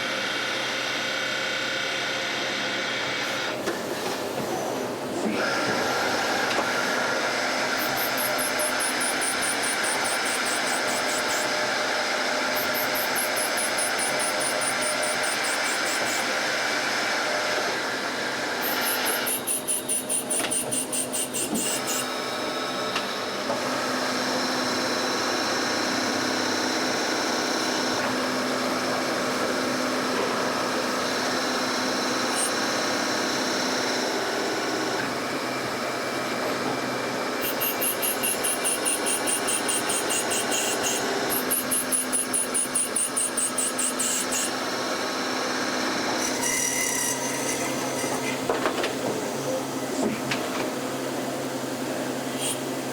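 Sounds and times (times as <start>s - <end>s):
machine noise with held tones: 0.0s - 23.3s, 24.2s - 50.1s, 51.0s - 52.9s.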